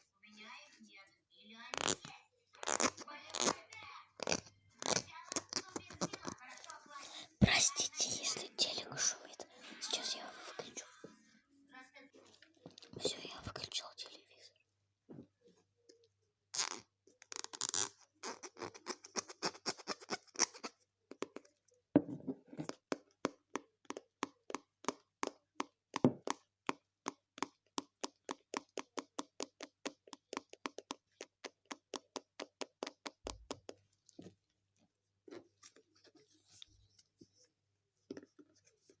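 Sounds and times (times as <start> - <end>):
slime squishing: 1.8 - 8.4.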